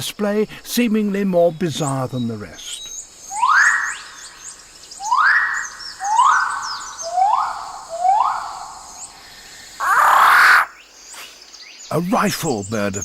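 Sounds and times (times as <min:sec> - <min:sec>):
faint high chirping: 0:01.6 - 0:13.0
bird giving loud rising calls: 0:03.2 - 0:11.4.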